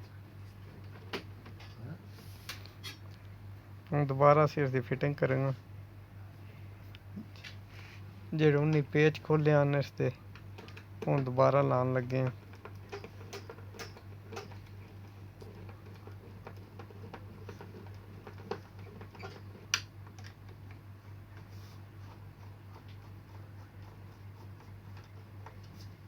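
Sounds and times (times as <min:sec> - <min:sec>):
steady low hum: 0:00.0 - 0:26.0.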